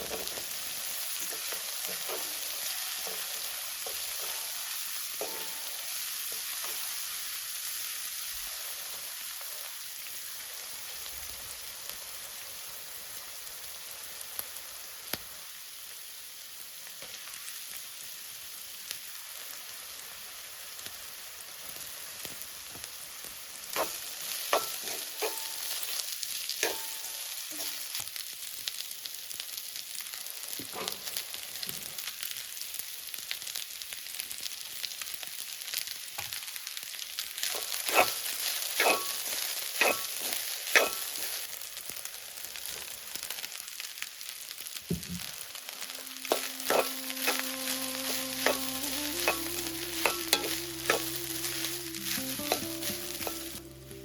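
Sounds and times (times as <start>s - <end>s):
food sizzling in a pan: 0.0s - 54.0s
metal utensil striking a pan: 1.2s - 6.9s, 23.8s - 26.0s, 26.6s - 27.9s, 30.6s - 31.0s, 37.4s - 41.3s, 45.9s - 53.6s.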